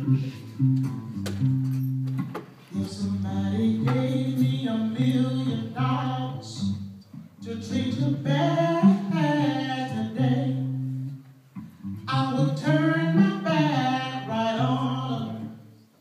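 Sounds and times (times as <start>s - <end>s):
blues band playing: 0.0s - 5.2s
woman singing: 7.4s - 10.7s, 12.1s - 15.6s.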